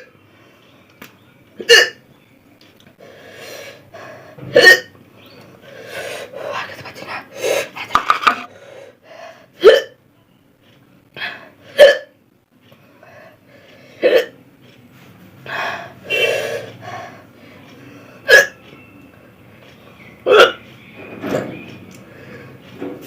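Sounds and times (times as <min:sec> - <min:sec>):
person hiccuping: 0:01.6 - 0:02.0, 0:04.5 - 0:05.0, 0:09.6 - 0:10.0, 0:11.7 - 0:12.2, 0:14.0 - 0:14.4, 0:18.2 - 0:18.6, 0:20.2 - 0:20.6.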